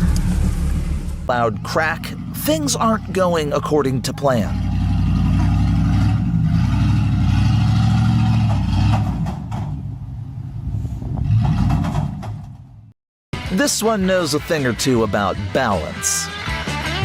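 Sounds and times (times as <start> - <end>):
off-road vehicle engine under load: 0.0 - 12.9
knocks and clatters: 5.2 - 5.8, 8.2 - 9.9, 11.2 - 12.8.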